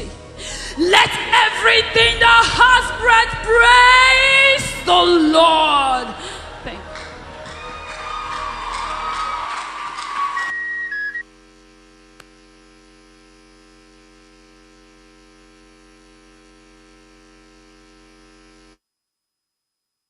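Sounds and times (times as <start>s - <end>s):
electrical mains hum: 8.1s - 18.8s.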